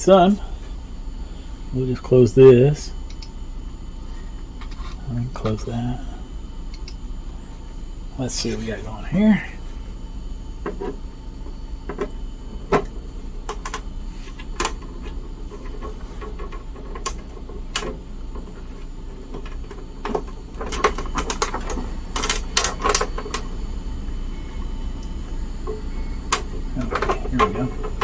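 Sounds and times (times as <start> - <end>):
faint low hum: 0.0 - 28.0.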